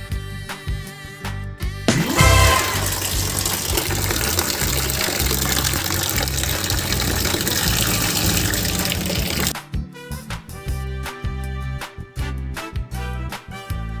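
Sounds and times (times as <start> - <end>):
tap gushing water: 1.9 - 9.5.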